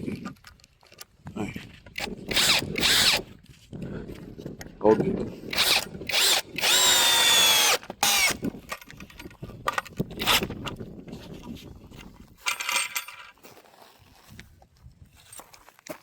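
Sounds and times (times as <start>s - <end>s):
power drill driving screws into wood: 2.0s - 3.3s, 5.5s - 8.5s, 10.2s - 10.5s.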